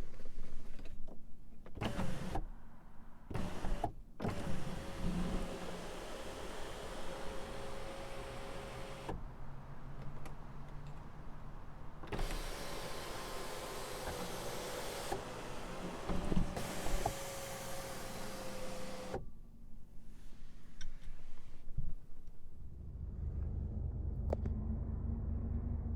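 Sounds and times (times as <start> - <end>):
electric window motor whining: 3.3 - 9.2, 12.0 - 19.2.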